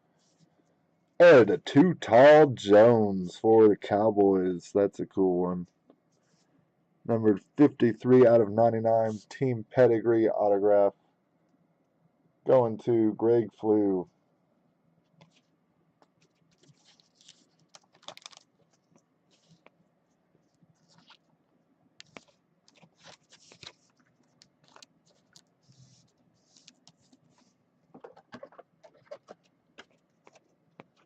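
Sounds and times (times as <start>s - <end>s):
card sliding into plastic sleeve: 22.0s - 24.0s.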